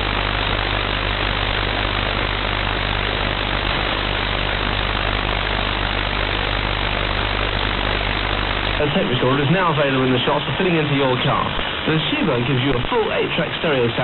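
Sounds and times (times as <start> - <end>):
low steady hum: 0.0 - 14.0
radio interference rushing noise: 0.0 - 14.0.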